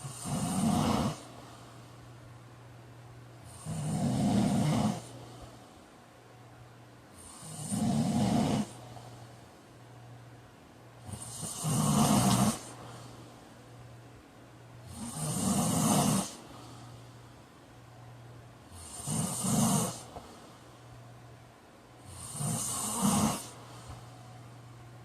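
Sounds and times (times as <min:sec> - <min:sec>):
man snoring loudly: 0:00.0 - 0:01.3, 0:03.5 - 0:05.1, 0:07.2 - 0:08.8, 0:11.0 - 0:12.7, 0:14.9 - 0:16.4, 0:18.7 - 0:20.1, 0:22.1 - 0:23.6
quiet breathing: 0:00.0 - 0:02.4, 0:03.3 - 0:06.2, 0:07.1 - 0:09.9, 0:11.0 - 0:14.0, 0:14.7 - 0:17.7, 0:18.6 - 0:21.2, 0:21.9 - 0:24.9.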